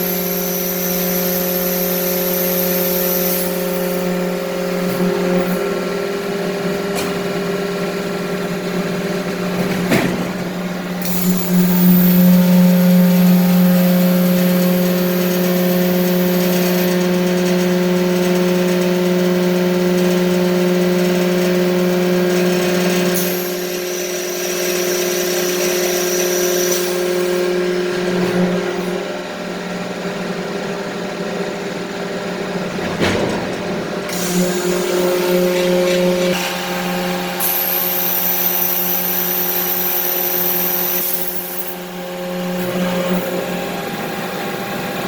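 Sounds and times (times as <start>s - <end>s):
hydraulic press machine hum: 0.0s - 45.0s
steady machine tones: 10.6s - 16.4s.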